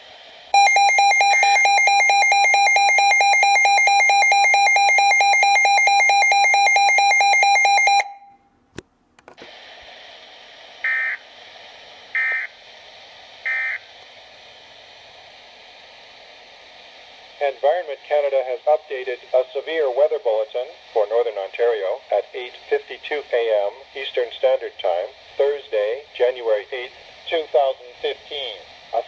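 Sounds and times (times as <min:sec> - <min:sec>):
faint radio hiss: 0:00.0 - 0:00.6, 0:08.5 - 0:29.0
pulsing electronic alarm tone: 0:00.6 - 0:08.3
radio click: 0:08.8 - 0:09.6.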